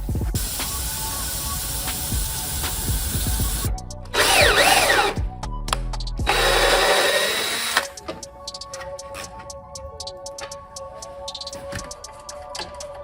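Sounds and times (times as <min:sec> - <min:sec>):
background music: 0:00.0 - 0:13.0
power tool whirring: 0:04.2 - 0:05.2, 0:06.3 - 0:08.0.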